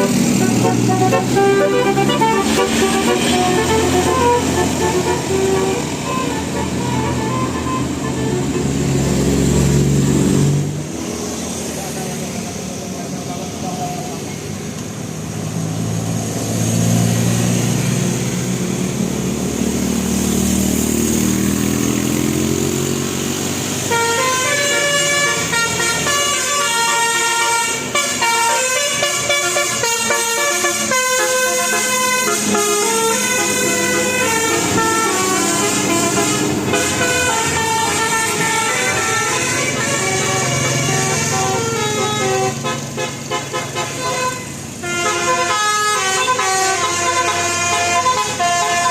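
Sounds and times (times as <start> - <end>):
multi-tone air horn melody: 0.0 - 9.3, 23.9 - 48.9
bus engine running: 0.0 - 48.9.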